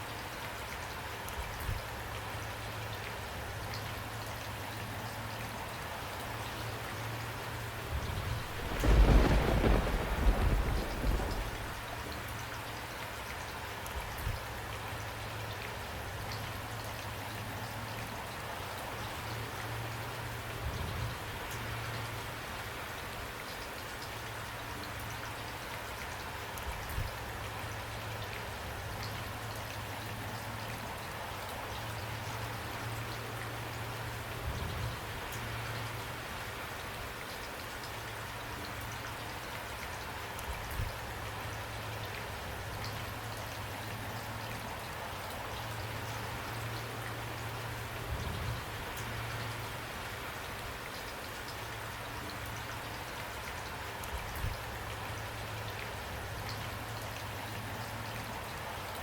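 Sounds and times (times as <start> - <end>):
steady rain: 0.0 - 59.0
thunder rumbling: 7.9 - 12.2.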